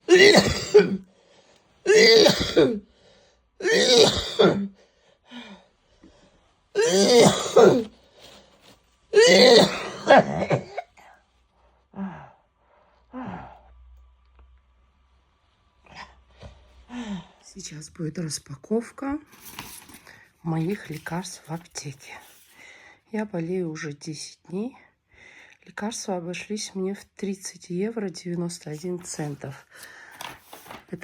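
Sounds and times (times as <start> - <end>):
woman coughing: 0.0 - 1.0, 1.9 - 2.8, 3.6 - 4.7, 6.8 - 7.9, 9.2 - 11.0.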